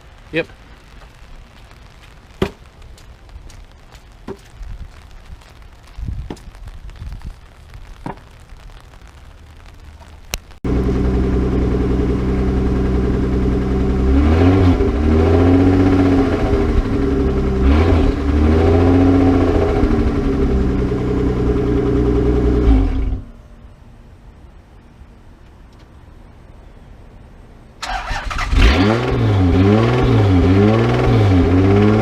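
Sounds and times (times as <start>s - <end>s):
car engine revving: 10.7s - 23.3s, 27.8s - 32.0s.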